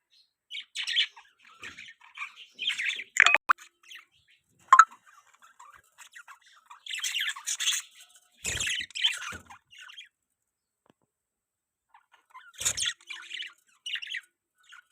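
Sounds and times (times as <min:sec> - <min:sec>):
budgerigars chattering and squawking: 0:00.5 - 0:04.1, 0:04.9 - 0:10.1, 0:12.0 - 0:14.9.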